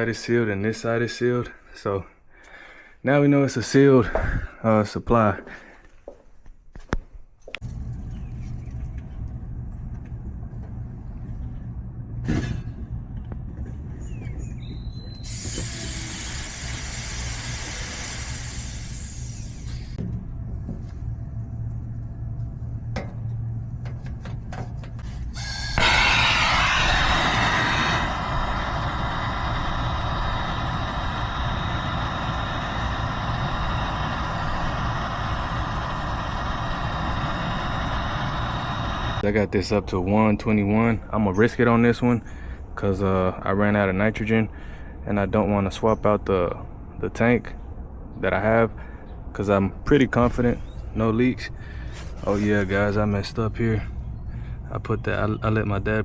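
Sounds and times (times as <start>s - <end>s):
low hum: 7.4s - 42.8s
gas hissing from regulator: 15.2s - 20.0s, 25.3s - 39.2s.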